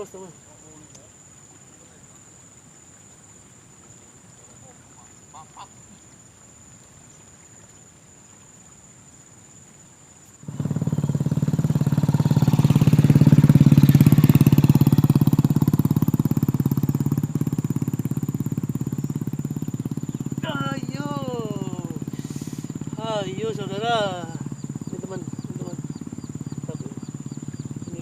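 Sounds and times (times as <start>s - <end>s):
faint outdoor background: 0.0s - 28.0s
small engine running loudly: 10.4s - 28.0s.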